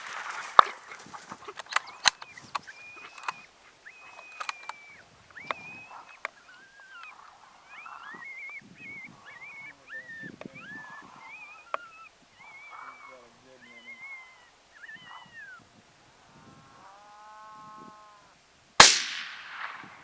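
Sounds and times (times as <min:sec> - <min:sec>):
sharp clicks: 0:00.0 - 0:03.4, 0:04.1 - 0:04.8
coyote yipping and howling: 0:00.0 - 0:15.8.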